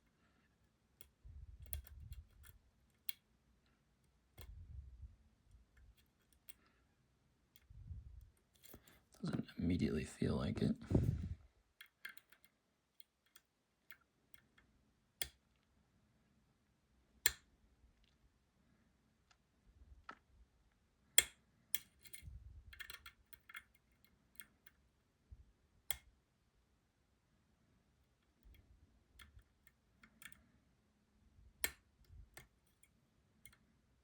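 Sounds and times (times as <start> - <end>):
faint handling noise: 7.5 - 12.5
lock pick metallic clicks: 11.8 - 14.6.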